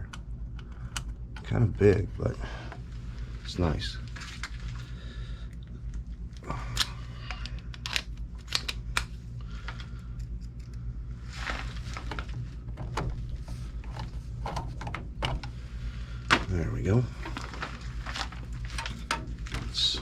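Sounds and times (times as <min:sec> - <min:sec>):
steady low hum: 0:00.0 - 0:20.0
clicks taps and rustles: 0:17.2 - 0:20.0.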